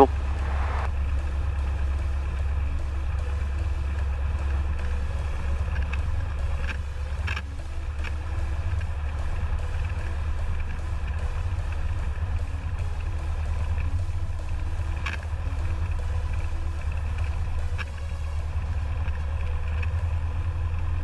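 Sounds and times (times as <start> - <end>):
aircraft engine droning: 0.0 - 21.0.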